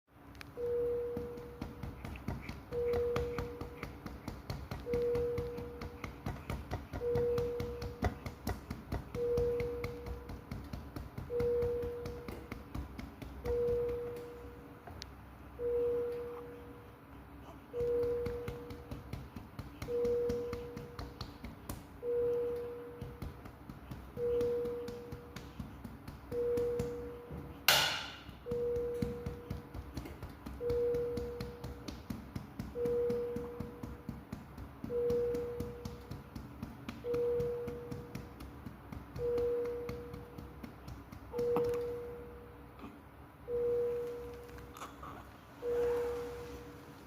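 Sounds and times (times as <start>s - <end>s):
medical monitor beep: 0.4s - 14.7s, 15.5s - 16.9s, 17.7s - 21.2s, 21.9s - 25.6s, 26.2s - 27.6s, 28.2s - 29.8s, 30.4s - 31.9s, 32.6s - 34.1s, 34.8s - 36.3s, 37.0s - 38.4s, 39.1s - 40.6s, 41.3s - 42.6s, 43.4s - 44.7s, 45.6s - 46.9s.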